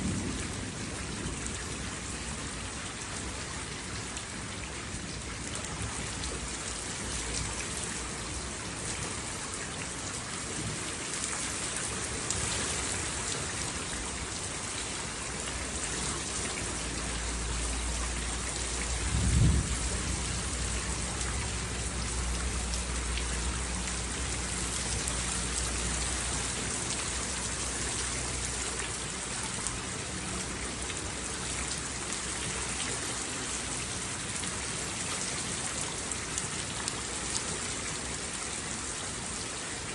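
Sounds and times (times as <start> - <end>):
heavy rain pattering: 0.0 - 39.9
thunder rumbling: 18.8 - 21.8
loud thunder crack: 19.0 - 20.2.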